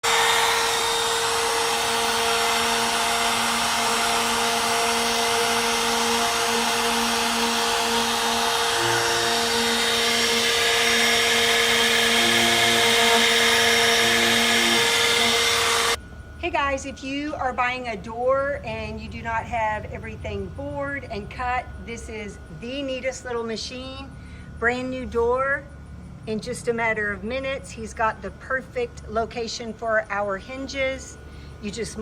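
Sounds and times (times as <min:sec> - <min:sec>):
wood router motor whine: 0:00.0 - 0:16.0.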